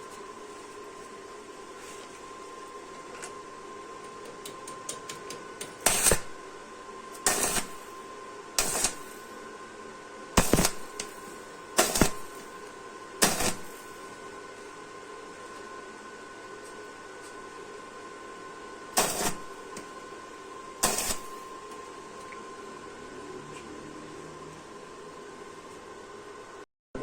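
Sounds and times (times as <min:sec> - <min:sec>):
welder machine humming: 0:00.0 - 0:27.0
welding arc crackling: 0:05.7 - 0:06.4, 0:07.2 - 0:07.9, 0:08.6 - 0:09.3, 0:10.4 - 0:11.2, 0:11.8 - 0:12.6, 0:13.2 - 0:14.0, 0:19.0 - 0:19.8, 0:20.8 - 0:21.5.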